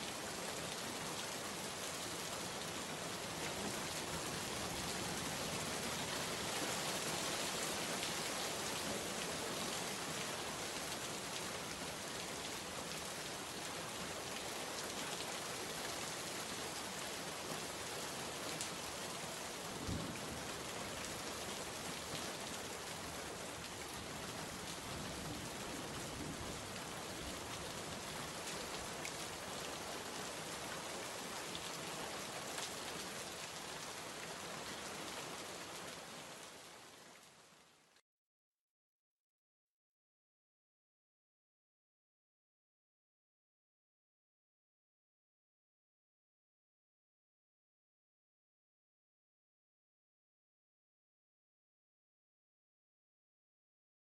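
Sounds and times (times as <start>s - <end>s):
rain pattering on a surface: 0.0s - 38.0s.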